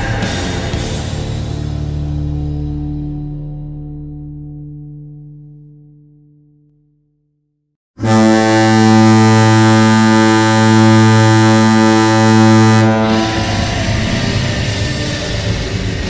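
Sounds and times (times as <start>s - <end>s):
rock music: 0.0s - 4.2s, 11.7s - 16.0s
goal horn blast: 8.0s - 15.6s.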